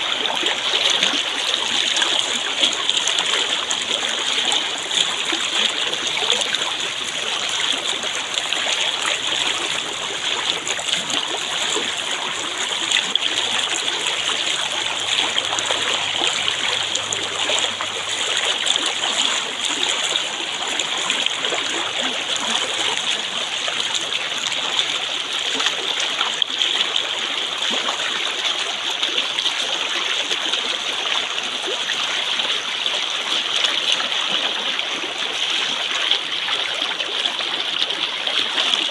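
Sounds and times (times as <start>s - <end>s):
stream water flowing: 0.0s - 38.9s.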